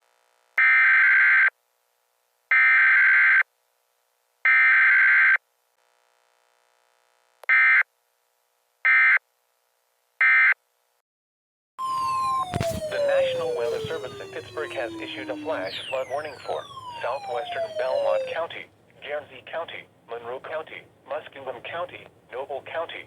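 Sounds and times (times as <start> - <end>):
steady alert tone: 11.8 - 18.5.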